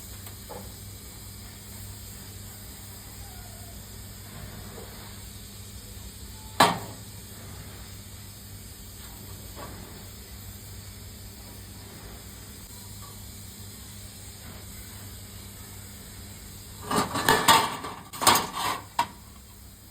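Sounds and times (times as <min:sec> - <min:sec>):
low hum and hiss: 0:00.0 - 0:19.9.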